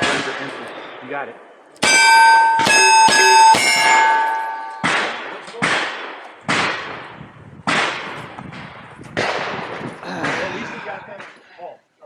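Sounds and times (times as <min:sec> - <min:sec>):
echoing gunshots: 0:00.0 - 0:11.3
steel target ringing: 0:01.8 - 0:05.3.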